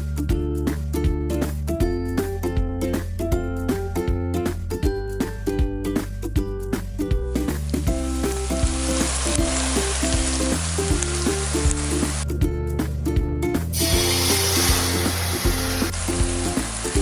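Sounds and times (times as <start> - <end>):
bouncy background music: 0.0 - 17.0
food sizzling in a pan: 13.7 - 16.0.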